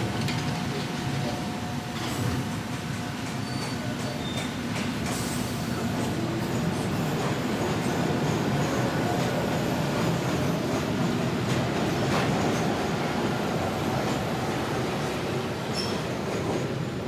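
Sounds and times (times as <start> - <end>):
train rumbling on rails: 0.0 - 17.0
wheel squeals: 15.7 - 16.1.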